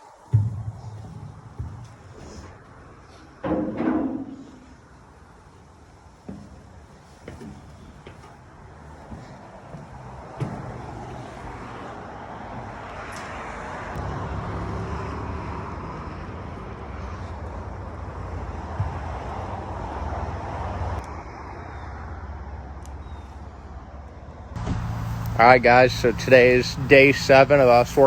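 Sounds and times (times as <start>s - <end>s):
engine humming: 0.0s - 21.2s, 22.7s - 28.0s
broad rushing noise: 24.6s - 28.0s.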